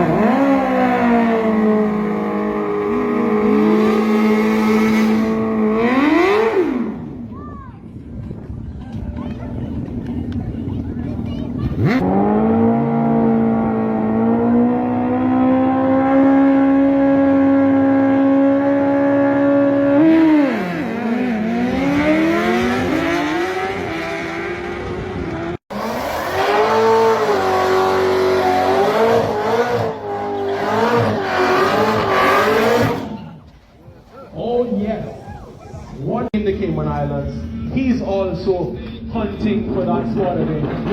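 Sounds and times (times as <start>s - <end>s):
engine revving: 0.0s - 7.3s, 11.6s - 33.5s
race car engine at high revs: 0.0s - 7.3s, 11.6s - 33.5s.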